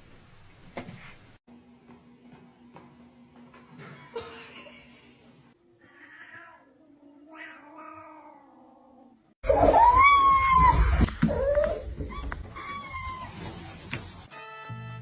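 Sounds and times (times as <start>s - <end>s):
cat meowing: 5.8s - 8.8s.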